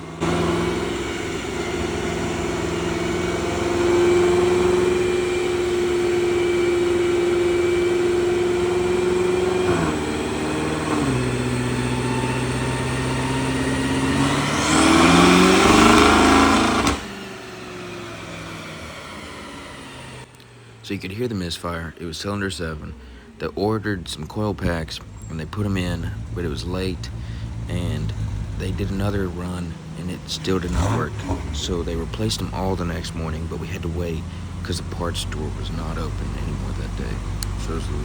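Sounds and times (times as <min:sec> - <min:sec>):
car engine revving hard: 0:00.0 - 0:38.0.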